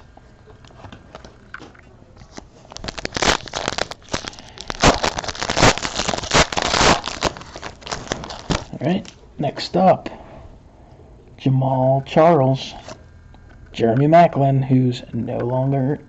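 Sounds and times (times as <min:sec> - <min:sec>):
foil wrapper crackling: 0:02.3 - 0:09.2.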